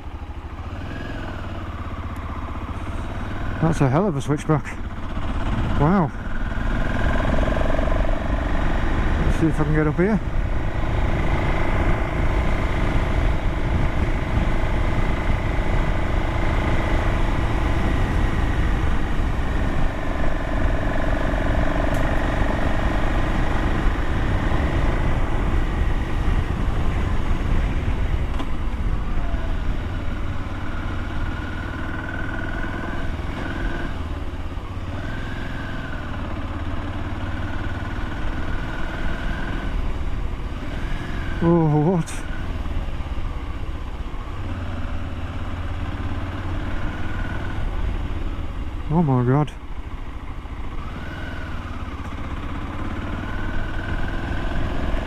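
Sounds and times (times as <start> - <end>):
motorcycle engine climbing: 0.0 - 55.0
wind rumble on microphone: 6.5 - 31.1.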